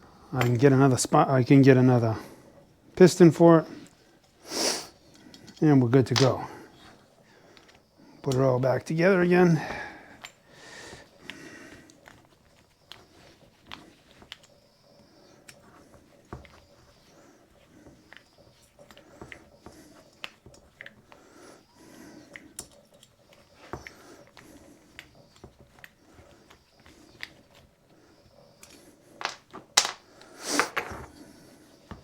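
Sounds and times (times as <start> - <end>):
tools and metal parts clicking: 5.1 - 6.5, 22.3 - 24.4.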